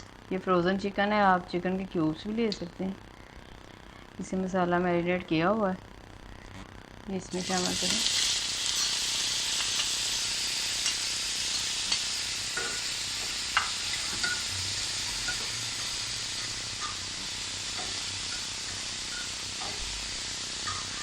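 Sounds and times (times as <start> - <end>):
chicken sizzling in hot oil: 7.3 - 21.0.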